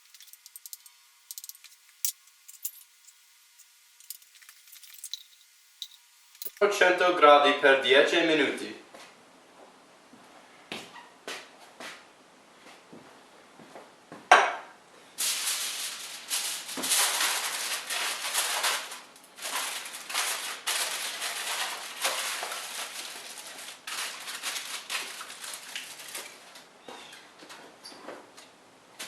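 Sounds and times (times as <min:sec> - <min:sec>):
crackling rustling noise: 0:00.0 - 0:06.6, 0:15.2 - 0:28.4.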